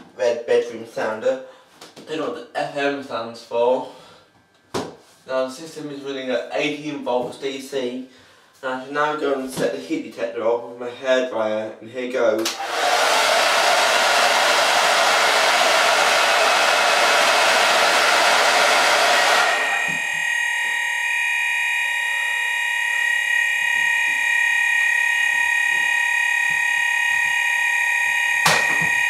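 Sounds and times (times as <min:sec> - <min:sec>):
hairdryer blowing: 0:12.5 - 0:20.8
fire alarm continuous tone: 0:19.2 - 0:29.0.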